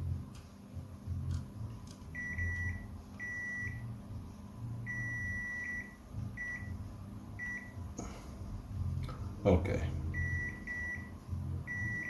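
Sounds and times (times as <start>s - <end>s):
multimeter continuity beeps: 2.1s - 3.9s, 4.8s - 6.8s, 7.4s - 7.8s, 10.1s - 12.0s.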